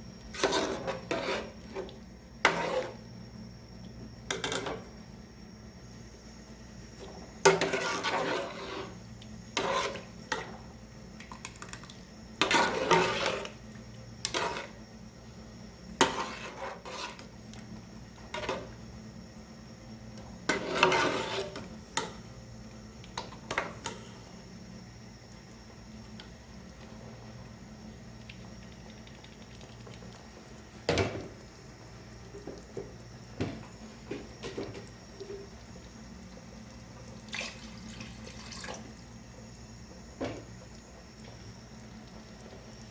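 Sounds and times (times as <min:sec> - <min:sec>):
utensil scraping cooking pot: 0:00.3 - 0:03.0, 0:07.4 - 0:09.0, 0:09.6 - 0:10.6, 0:12.4 - 0:13.6, 0:14.2 - 0:14.8, 0:16.0 - 0:17.3, 0:20.5 - 0:21.7.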